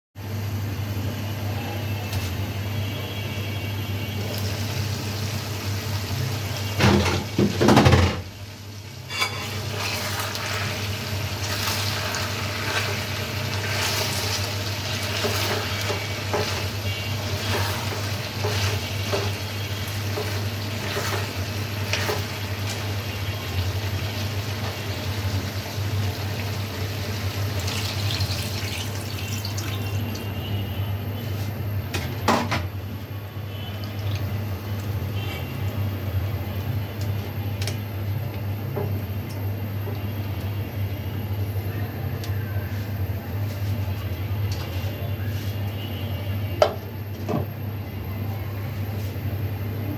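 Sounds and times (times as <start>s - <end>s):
food sizzling in a pan: 0.3s - 49.8s
spoon scraping and stirring: 9.1s - 22.9s.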